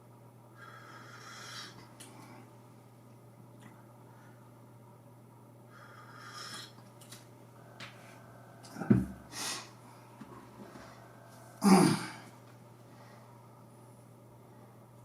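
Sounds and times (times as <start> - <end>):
faint electrical hum: 0.0 - 15.0
man breathing: 7.6 - 13.7
low throat sound: 11.5 - 12.4.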